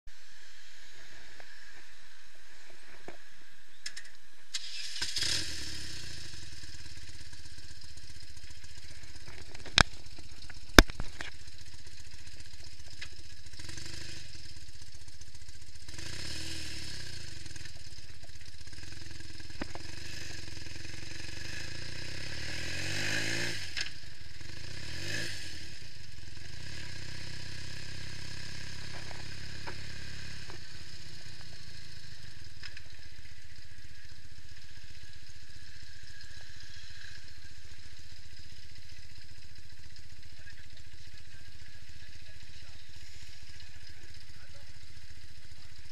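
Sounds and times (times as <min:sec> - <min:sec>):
motorcycle engine idling: 0:00.1 - 0:45.9
sharp clicks: 0:03.8 - 0:04.7, 0:09.2 - 0:11.4.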